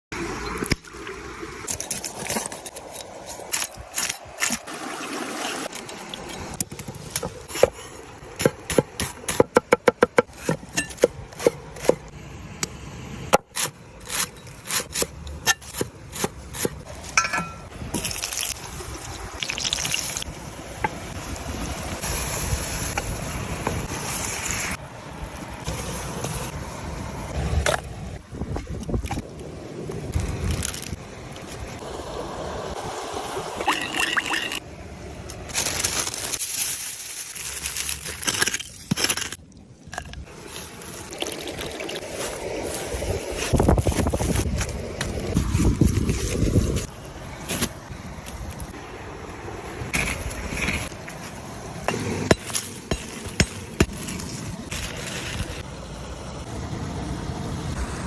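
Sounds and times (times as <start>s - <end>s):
trickling water: 0.2s - 8.4s, 17.1s - 24.0s, 30.2s - 35.5s, 37.0s - 43.6s.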